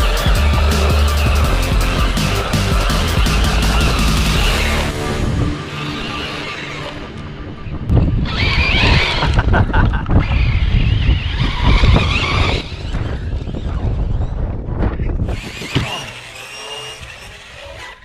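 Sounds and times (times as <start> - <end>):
tyres skidding: 0.0 - 9.5, 10.2 - 14.2, 15.3 - 18.0
electric motor whining: 0.0 - 14.3, 15.2 - 18.0.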